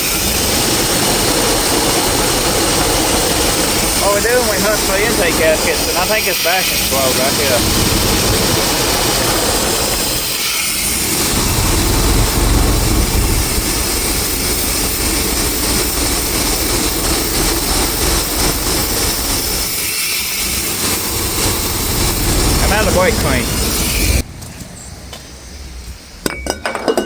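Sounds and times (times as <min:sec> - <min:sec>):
engine idling: 0:00.0 - 0:10.3, 0:10.9 - 0:24.2.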